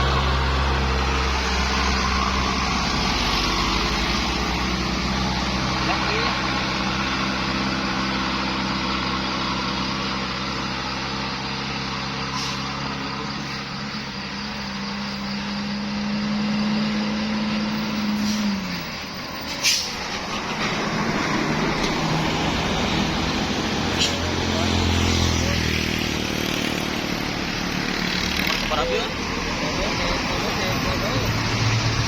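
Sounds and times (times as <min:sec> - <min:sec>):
bus diesel engine running: 0:00.0 - 0:32.0
sharp hiss: 0:19.4 - 0:20.9.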